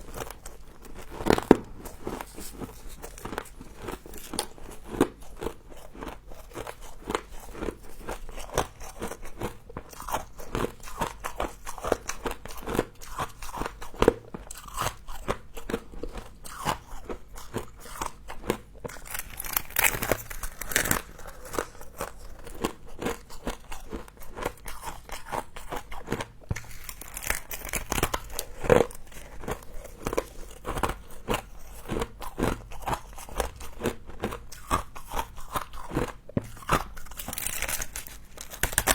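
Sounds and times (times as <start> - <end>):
person crunching frost: 0.0 - 11.0, 16.5 - 38.9.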